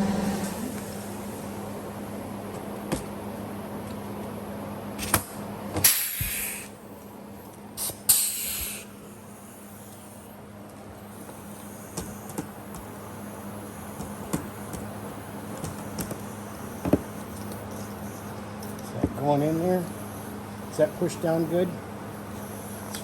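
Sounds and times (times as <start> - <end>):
rivet gun air blasts: 5.0 - 6.8, 7.8 - 9.0.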